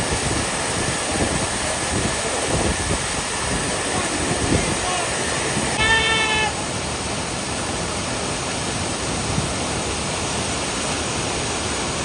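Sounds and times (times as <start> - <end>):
waterfall rushing: 3.9 - 12.0
brief high-pitched call: 5.8 - 6.6.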